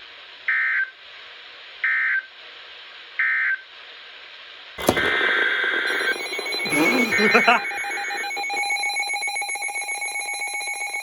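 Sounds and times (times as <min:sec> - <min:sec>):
radio hiss: 0:04.8 - 0:08.6
screeching digital data tones: 0:05.1 - 0:09.4.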